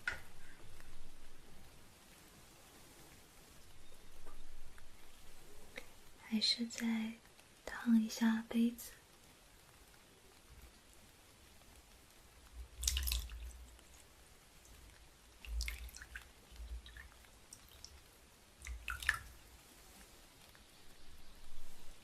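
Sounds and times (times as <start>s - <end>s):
hot water splashing into cups: 11.9s - 19.6s.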